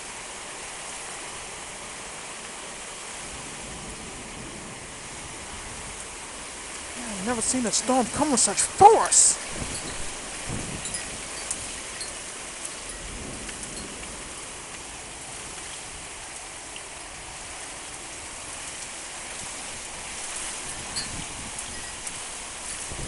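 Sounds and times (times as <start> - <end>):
heavy rain pouring: 0.0 - 23.0
wind: 0.0 - 23.0
raindrop ticks: 7.0 - 14.9.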